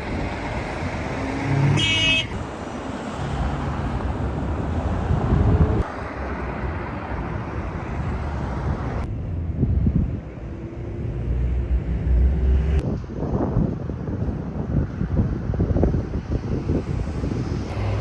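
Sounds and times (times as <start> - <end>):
road traffic passing: 0.0 - 18.0
short car horn toot: 1.8 - 2.3.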